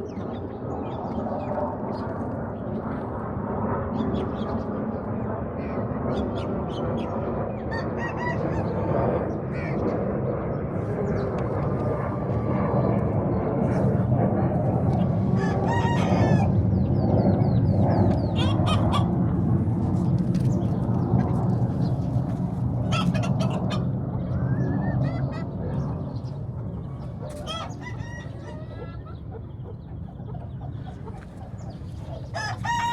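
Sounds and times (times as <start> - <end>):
chickens calling: 7.7 - 8.9, 14.9 - 32.9
rooster crowing: 15.4 - 16.5, 27.4 - 29.0, 32.3 - 32.9.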